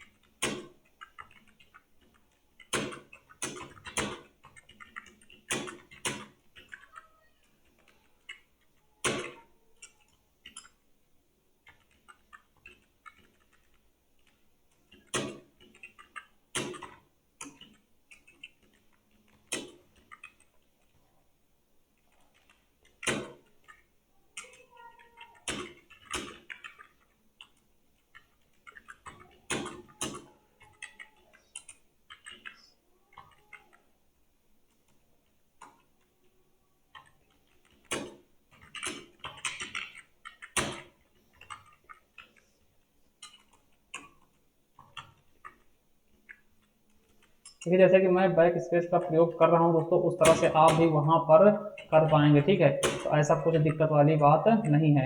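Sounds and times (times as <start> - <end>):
keyboard keys clicking: 0.0 - 10.8, 11.6 - 21.0, 24.4 - 32.6.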